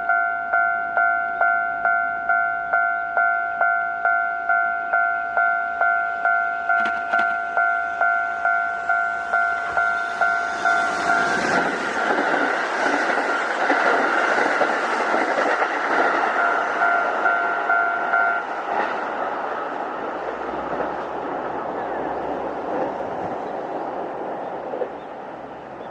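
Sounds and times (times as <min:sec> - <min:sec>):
level crossing bell dinging: 0:00.0 - 0:11.3
train wheels on rails: 0:05.3 - 0:25.9.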